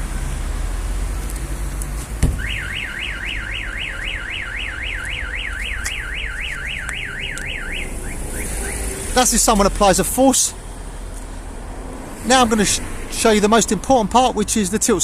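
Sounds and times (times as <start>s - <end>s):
thump on car body: 2.2s - 2.5s
car alarm siren sweeping: 2.3s - 10.2s.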